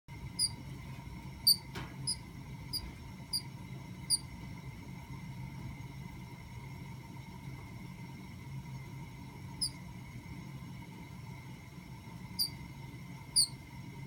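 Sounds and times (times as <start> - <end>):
bird squeaking: 1.5 - 2.8.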